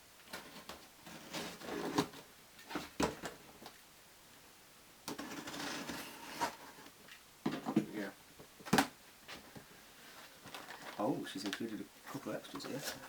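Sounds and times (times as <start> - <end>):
packing tape and cardboard tearing: 0.3 - 3.4, 5.1 - 6.8.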